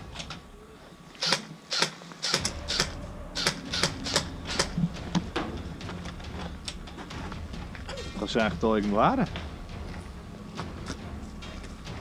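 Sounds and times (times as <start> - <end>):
low rumble: 2.4 - 7.9.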